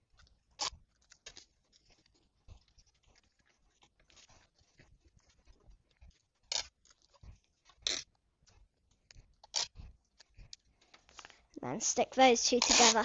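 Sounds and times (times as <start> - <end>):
paper being cut or torn: 12.6 - 13.0.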